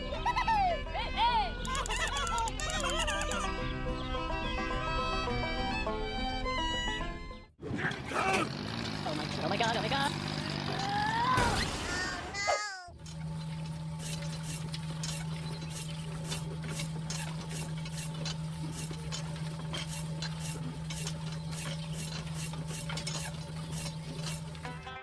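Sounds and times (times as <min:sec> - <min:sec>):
regular motor clicking: 0:01.6 - 0:03.5, 0:07.9 - 0:11.4, 0:12.9 - 0:24.7
small electric motor humming: 0:08.3 - 0:11.4, 0:12.9 - 0:24.7.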